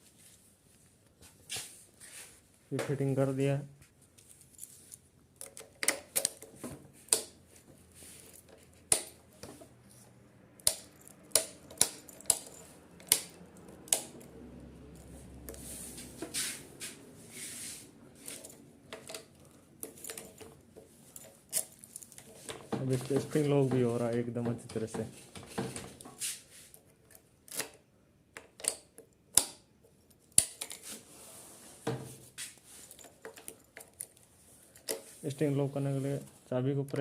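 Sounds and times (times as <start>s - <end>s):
metallic key clicks in lock: 10.6s - 14.3s.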